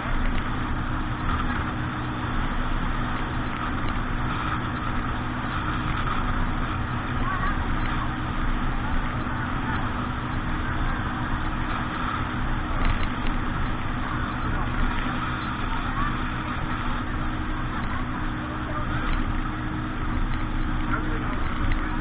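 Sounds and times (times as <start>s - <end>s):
motorboat engine running: 0.0s - 22.0s.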